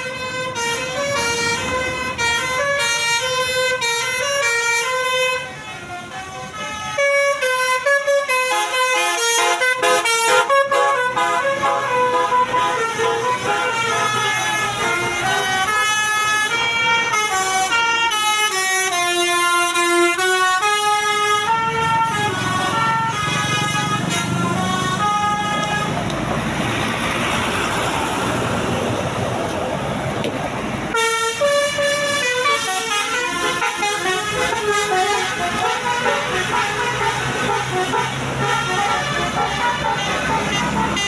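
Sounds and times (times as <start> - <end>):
bus musical horn tune: 0.0 - 26.0, 30.9 - 41.0.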